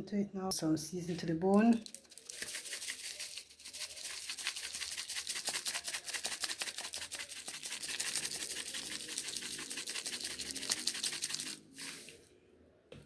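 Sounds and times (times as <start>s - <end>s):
scratchy rustling on raw chicken: 1.9s - 12.3s.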